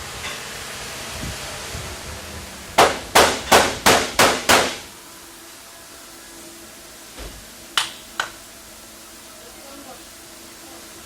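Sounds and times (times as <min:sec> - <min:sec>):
sharp knocks: 0:02.8 - 0:04.8.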